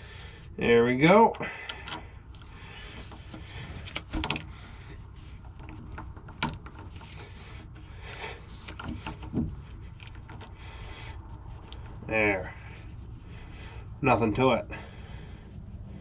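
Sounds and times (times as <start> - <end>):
low steady hum: 0.0 - 16.0
metal tools clinking: 1.8 - 4.8, 5.7 - 10.6.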